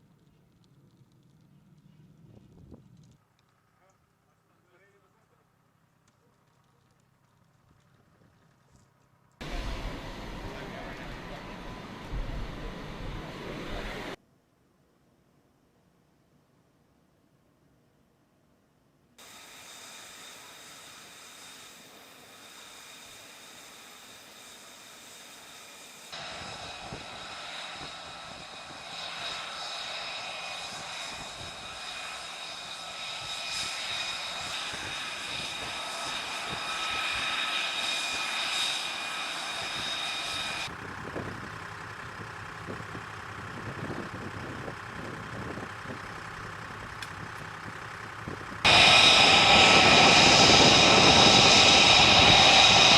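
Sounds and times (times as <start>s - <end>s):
jet engine whine and roar: 9.4s - 14.2s, 19.2s - 52.9s.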